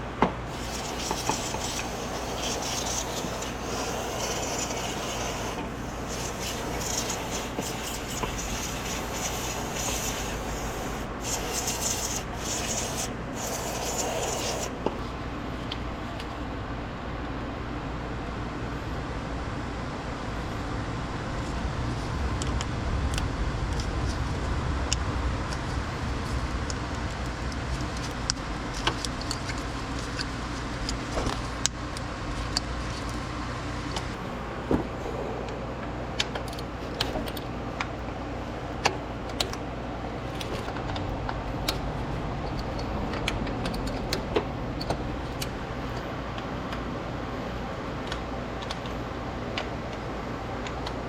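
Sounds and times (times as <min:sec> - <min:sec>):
steady low rumble: 0:00.0 - 0:36.2.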